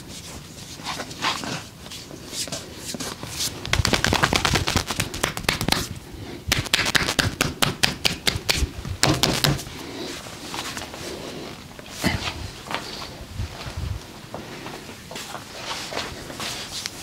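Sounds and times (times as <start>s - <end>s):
hands slapping body: 3.6s - 5.9s, 6.5s - 9.6s.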